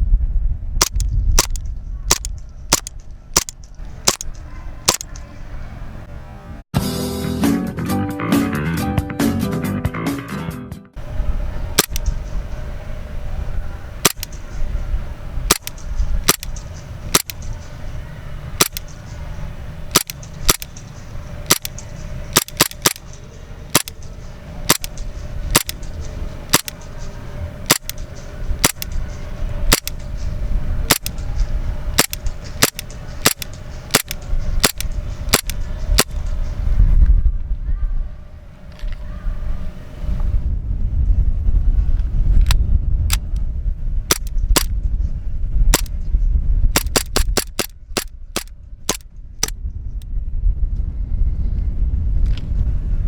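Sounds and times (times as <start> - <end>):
wind on microphone: 0.0 - 6.6, 11.0 - 53.0
airsoft pistol shots: 0.8 - 5.2, 11.8 - 12.1, 14.0 - 14.4, 15.5 - 17.5, 18.6 - 18.9, 19.9 - 20.8, 21.5 - 23.1, 23.7 - 24.1, 24.7 - 25.9, 26.5 - 26.8, 27.7 - 28.0, 28.6 - 29.0, 29.7 - 30.0, 30.9 - 31.2, 32.0 - 36.3, 44.1 - 44.7, 46.8 - 49.0.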